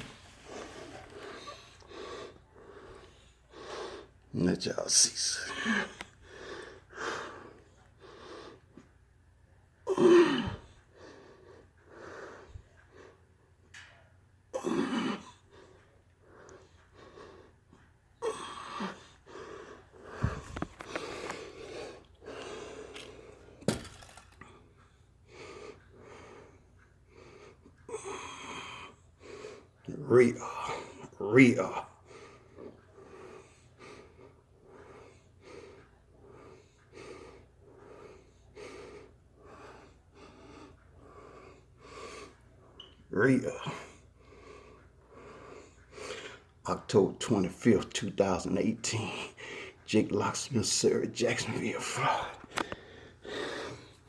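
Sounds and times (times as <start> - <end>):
man breathing hard: 5.2 - 8.9, 15.4 - 24.3, 31.9 - 42.6, 49.0 - 49.8, 51.6 - 54.0.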